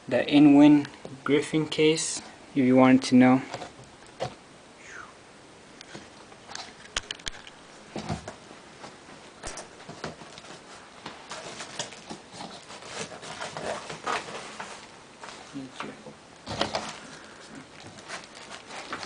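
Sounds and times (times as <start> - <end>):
packaging rustling and crinkling: 5.9 - 19.0.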